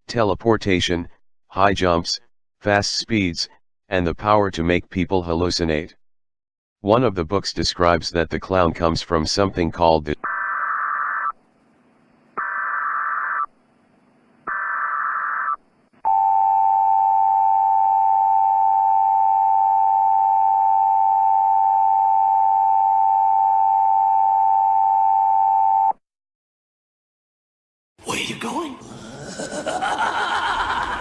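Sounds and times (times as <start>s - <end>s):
screeching digital header tones: 10.2s - 11.4s, 12.4s - 13.5s, 14.5s - 15.6s.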